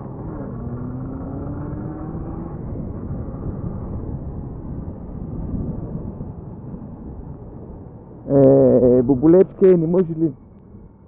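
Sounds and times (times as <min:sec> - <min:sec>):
wind rush over microphone: 0:02.0 - 0:09.6.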